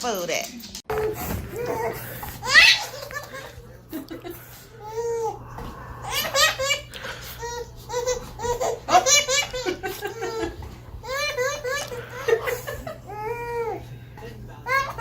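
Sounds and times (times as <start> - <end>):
person laughing hard: 8.1 - 13.7.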